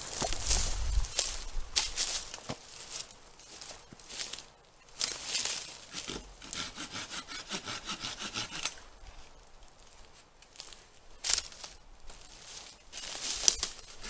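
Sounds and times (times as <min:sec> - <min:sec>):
hand saw cutting wood: 0:05.9 - 0:08.8.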